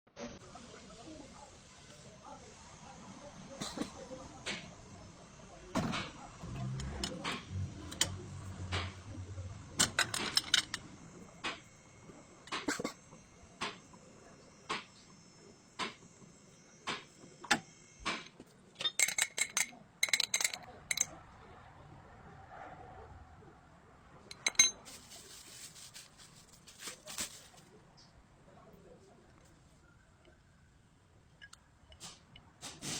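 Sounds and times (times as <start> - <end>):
metal tools clinking on steel: 9.8 - 10.8, 18.8 - 21.1, 24.3 - 25.0.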